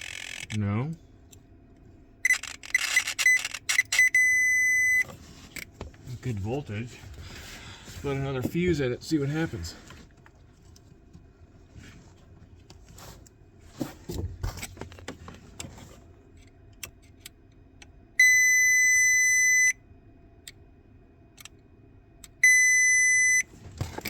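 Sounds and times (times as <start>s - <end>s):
steady electronic beep: 2.3s - 5.0s.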